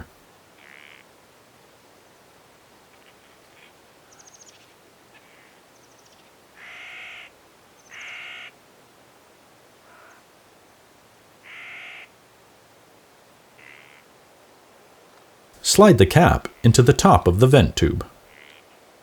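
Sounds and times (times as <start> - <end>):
crow cawing: 6.6 - 7.3, 7.9 - 8.5, 11.5 - 12.1
background hiss: 14.3 - 18.1.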